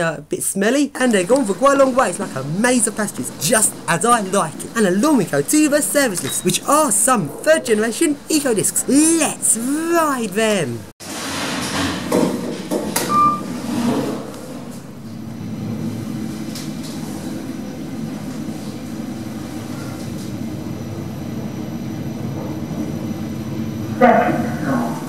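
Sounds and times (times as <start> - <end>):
lift car humming and rumbling: 12.9 - 25.0
short beep: 13.1 - 13.5.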